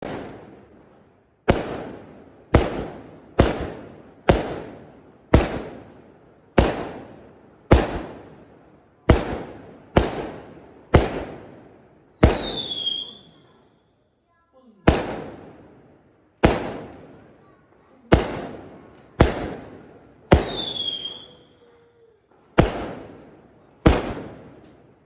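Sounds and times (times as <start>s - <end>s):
fireworks banging: 0.0s - 8.4s, 9.1s - 13.3s, 14.8s - 17.4s, 18.0s - 21.4s, 22.3s - 25.0s
firework whistle: 12.2s - 13.3s, 20.4s - 21.5s.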